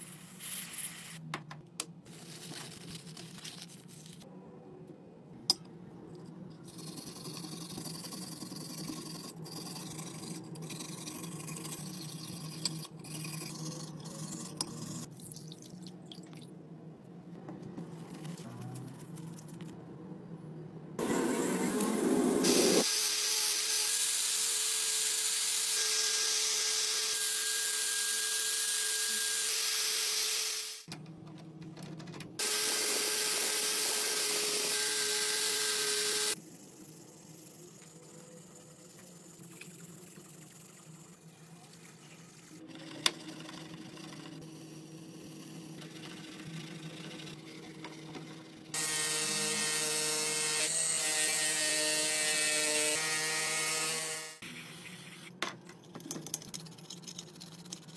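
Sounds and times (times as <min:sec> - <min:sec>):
power tool running: 0:32.4 - 0:36.4.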